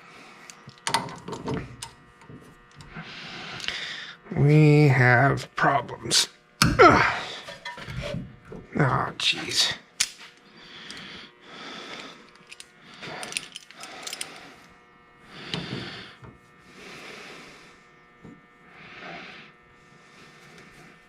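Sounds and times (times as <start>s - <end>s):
heavy breathing and straining: 10.6s - 14.6s.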